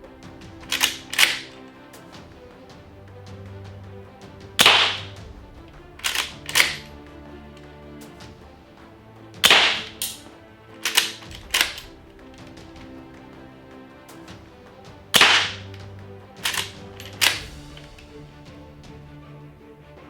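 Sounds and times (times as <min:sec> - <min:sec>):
airsoft rifle shots cracking: 0:00.7 - 0:01.5, 0:04.6 - 0:05.1, 0:06.0 - 0:06.9, 0:09.4 - 0:10.2, 0:10.8 - 0:11.9, 0:15.2 - 0:15.7, 0:16.4 - 0:17.9
metallic clack of rifle lever: 0:00.7 - 0:01.5, 0:06.0 - 0:06.9, 0:09.4 - 0:11.9, 0:15.2 - 0:18.1.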